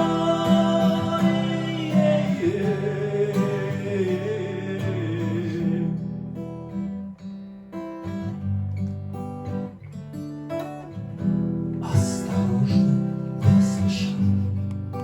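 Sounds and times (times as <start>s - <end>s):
person singing with vibrato: 0.0s - 5.9s
acoustic guitar strumming chords: 0.0s - 15.0s.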